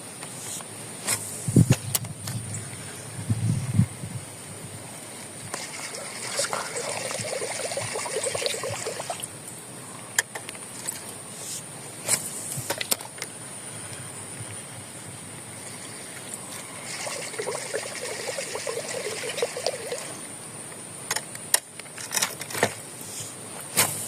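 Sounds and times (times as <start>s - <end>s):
steady high hum: 0.0s - 21.4s
water splashing and trickling: 5.6s - 9.3s, 16.8s - 20.2s.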